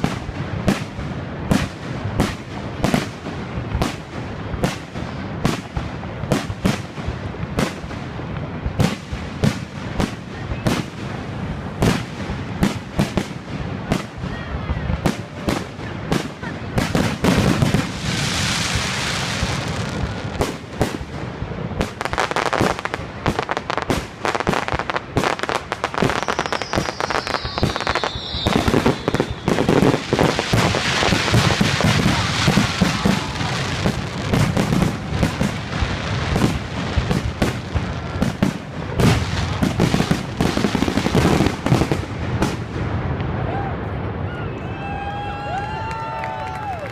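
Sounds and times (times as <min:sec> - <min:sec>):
fireworks bangs and crackling: 0:00.0 - 0:44.3
falling firework whistle: 0:25.9 - 0:34.0.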